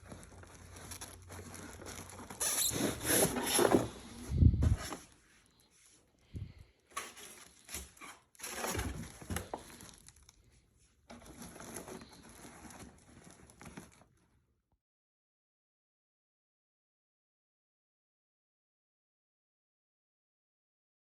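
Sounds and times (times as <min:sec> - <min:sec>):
packaging crinkling and rustling: 0:00.0 - 0:05.7, 0:06.6 - 0:14.4.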